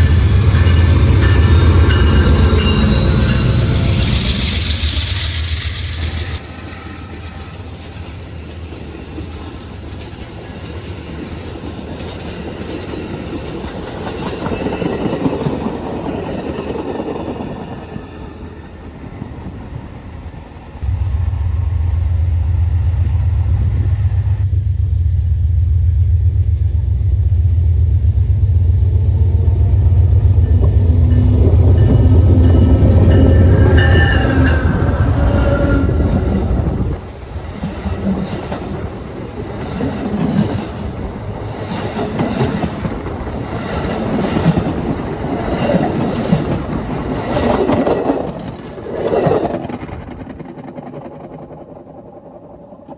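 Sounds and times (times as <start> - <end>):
diesel locomotive rumble: 0.0 - 11.5, 20.8 - 47.6
rail cars rolling on track: 0.0 - 52.9.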